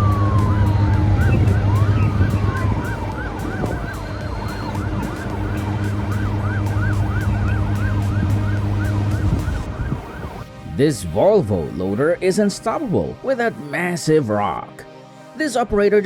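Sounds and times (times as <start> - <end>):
siren yelping: 0.0 - 10.5
long falling siren tones: 0.0 - 10.8
low engine drone: 0.0 - 11.8.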